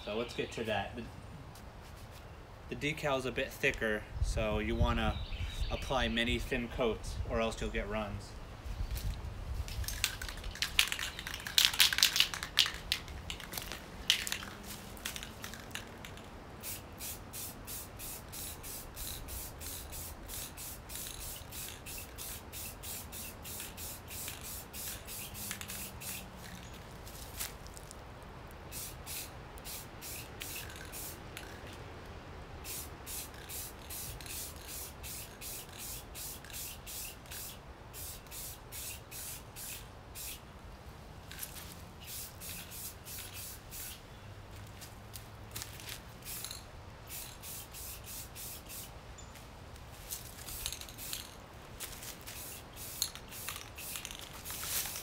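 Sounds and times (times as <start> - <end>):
aerosol spray can hissing: 16.6 - 26.5, 28.7 - 31.6, 32.6 - 40.4, 42.0 - 44.0, 46.2 - 48.9, 50.4 - 51.4, 52.1 - 55.0.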